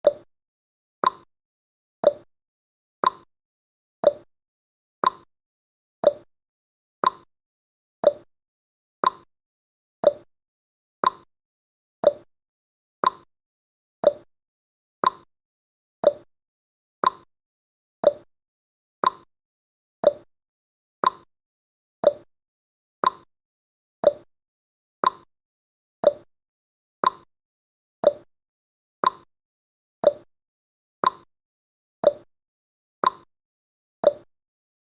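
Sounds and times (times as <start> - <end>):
timer clicks: 0.0 - 0.3, 1.0 - 1.3, 2.0 - 2.3, 3.0 - 3.3, 4.0 - 4.3, 5.0 - 5.3, 6.0 - 6.3, 7.0 - 7.3, 8.0 - 8.3, 9.0 - 9.3, 10.0 - 10.3, 11.0 - 11.3, 12.0 - 12.3, 13.0 - 13.3, 14.0 - 14.3, 15.0 - 15.3, 16.0 - 16.3, 17.0 - 17.3, 18.0 - 18.3, 19.0 - 19.3, 20.0 - 20.3, 21.0 - 21.3, 22.0 - 22.3, 23.0 - 23.3, 24.0 - 24.3, 25.0 - 25.3, 26.0 - 26.3, 27.0 - 27.3, 28.0 - 28.3, 29.0 - 29.3, 30.0 - 30.3, 31.0 - 31.3, 32.0 - 32.3, 33.0 - 33.3, 34.0 - 34.3.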